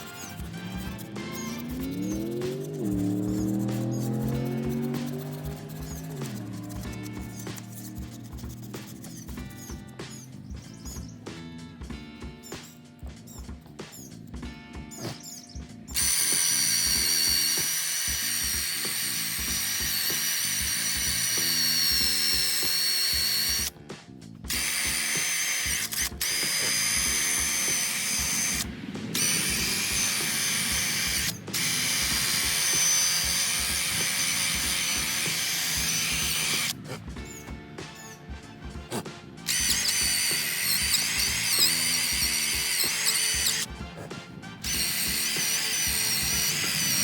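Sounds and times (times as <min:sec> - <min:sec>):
power tool high whine: 0:00.0 - 0:07.8, 0:15.9 - 0:23.7, 0:24.5 - 0:36.8, 0:39.4 - 0:43.7, 0:44.6 - 0:47.0
background music with steady beat: 0:00.0 - 0:47.0.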